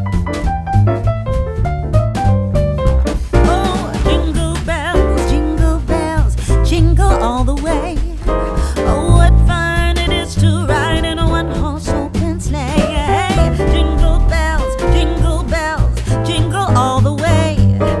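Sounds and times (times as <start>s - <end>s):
guitar bass and beat: 0.0s - 18.0s
singer with vibrato: 3.4s - 17.7s.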